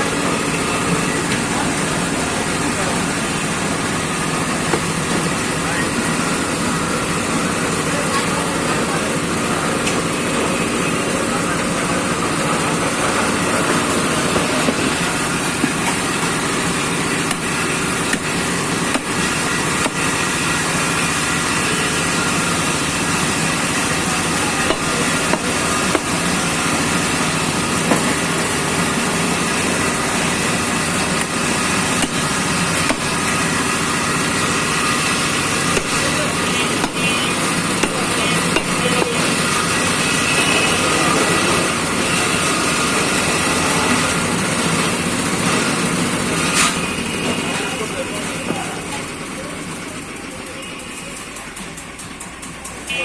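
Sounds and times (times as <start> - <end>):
voices: 0.0 - 45.6, 46.2 - 53.0
street traffic: 0.0 - 53.0
knife chopping meat: 17.2 - 18.3, 18.9 - 20.1, 24.6 - 26.1, 31.2 - 33.1, 35.7 - 36.0, 36.7 - 37.0, 37.8 - 39.2.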